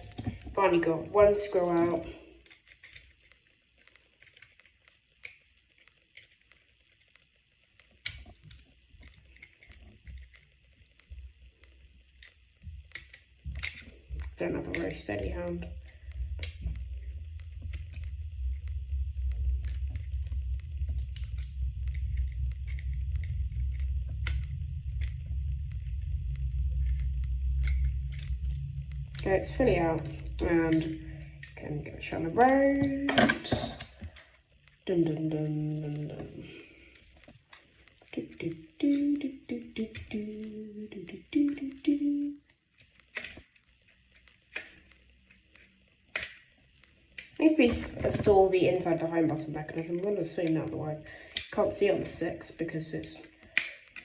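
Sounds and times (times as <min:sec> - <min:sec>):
steady low hum: 0:00.0 - 0:03.4, 0:08.0 - 0:44.8, 0:45.5 - 0:54.0
low handling rumble: 0:12.5 - 0:36.9, 0:47.4 - 0:53.7.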